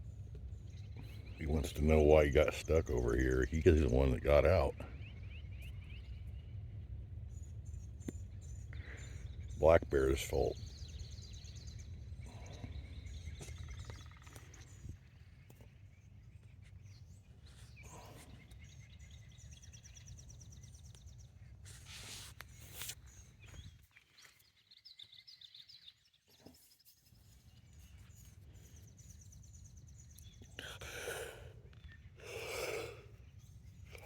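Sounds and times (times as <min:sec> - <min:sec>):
low rumble of wind: 0:00.0 - 0:21.9
brief rustling: 0:21.7 - 0:23.6.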